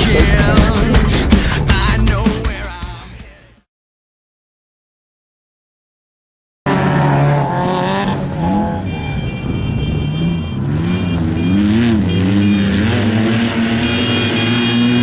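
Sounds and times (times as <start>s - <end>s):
off-road vehicle engines revving: 0.0s - 1.7s, 6.7s - 15.0s.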